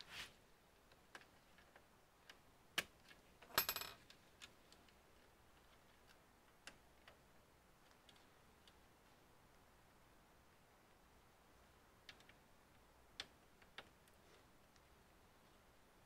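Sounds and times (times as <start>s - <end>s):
metal parts clicking and clinking: 3.4s - 4.1s.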